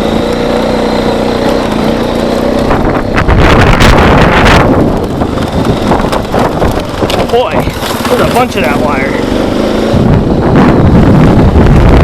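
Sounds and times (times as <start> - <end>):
atv engine running: 0.0 - 12.0
wind noise on microphone: 2.0 - 12.0.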